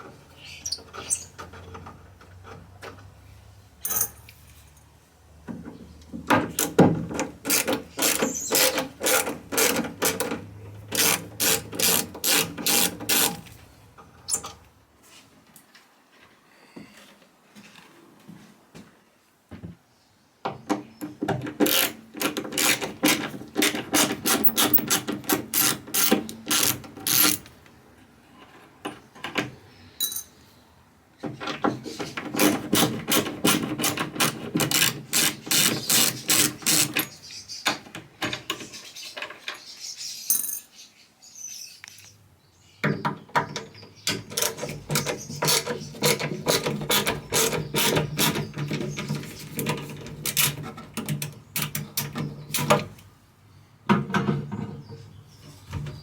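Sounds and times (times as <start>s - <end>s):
hand tool rapid clicking: 7.4s - 13.4s, 21.6s - 27.5s, 32.4s - 37.1s, 44.3s - 48.5s.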